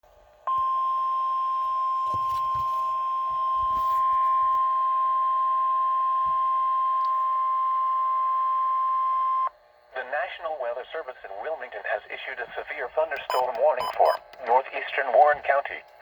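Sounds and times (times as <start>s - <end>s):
faint radio hiss: 9.9s - 16.0s
steady warning alarm tone: 13.2s - 14.3s.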